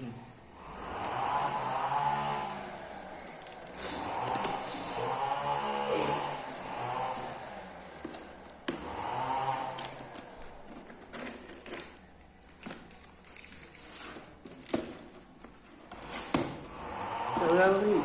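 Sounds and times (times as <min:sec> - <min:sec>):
packaging clicks and rustles: 0:02.5 - 0:04.9, 0:06.5 - 0:18.0.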